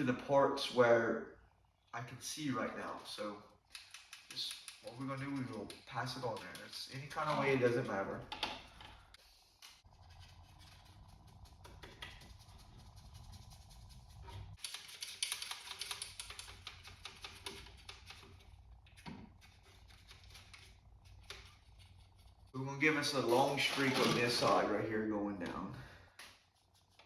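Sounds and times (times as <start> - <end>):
steady low hum: 0.0 - 14.6, 15.5 - 27.0
paintbrush scratchy strokes: 9.2 - 24.6, 26.2 - 27.0.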